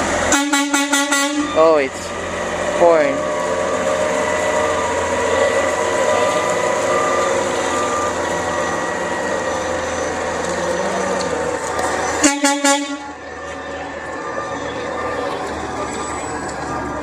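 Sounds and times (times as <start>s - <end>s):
garbage truck engine drone: 0.0s - 17.0s
loud horn toots: 0.3s - 1.6s, 12.2s - 13.2s.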